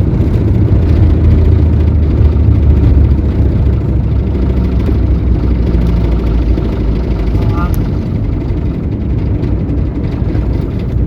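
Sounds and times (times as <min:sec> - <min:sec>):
van engine and road noise: 0:00.0 - 0:11.0.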